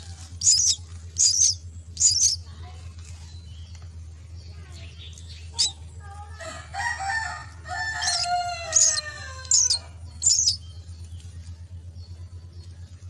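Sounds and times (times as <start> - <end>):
myna birds calling: 0.0 - 13.0
steady low hum: 0.0 - 13.0
shrill bird squeaks: 0.4 - 2.4, 7.9 - 10.6.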